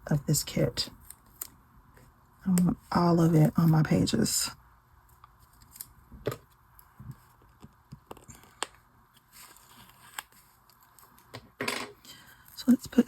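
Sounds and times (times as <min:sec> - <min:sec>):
paper rustling: 0:06.9 - 0:11.3.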